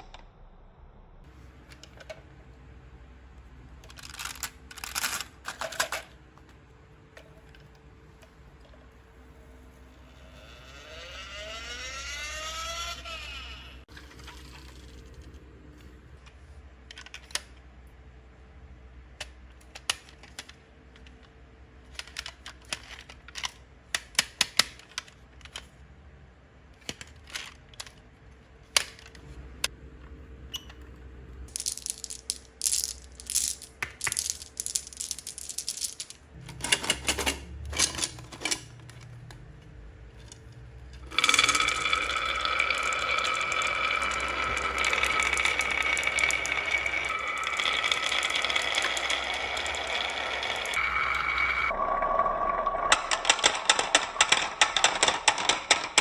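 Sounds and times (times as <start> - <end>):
marbles clattering down wooden run: 31.5 - 36.3, 41.0 - 51.7, 52.6 - 56.0.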